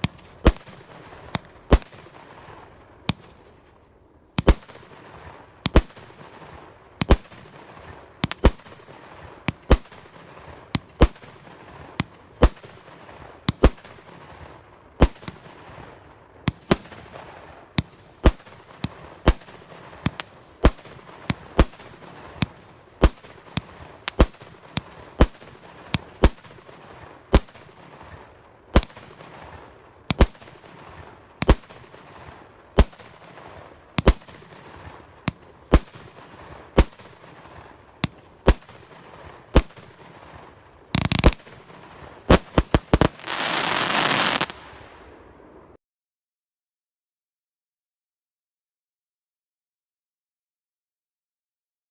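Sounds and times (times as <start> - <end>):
fireworks hissing and crackling: 0.0 - 45.5
fireworks reports: 15.0 - 45.2.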